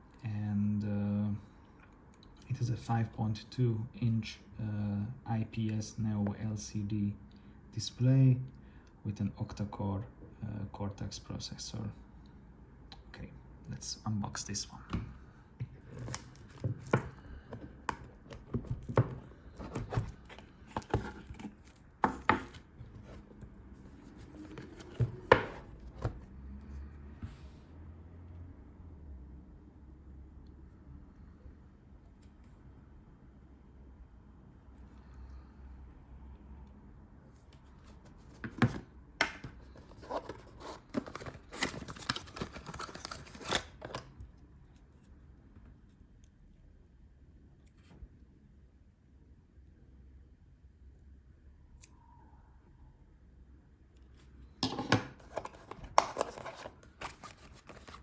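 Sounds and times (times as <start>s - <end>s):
packaging taps clicks and scrapes: 15.7s - 23.2s, 39.8s - 44.1s, 55.2s - 58.0s
packaging tearing and crinkling: 40.5s - 44.0s.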